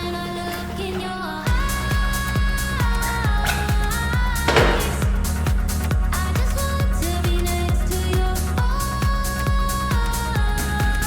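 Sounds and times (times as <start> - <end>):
electronic pop music: 0.0 - 11.0
kick drum beat: 2.4 - 6.5.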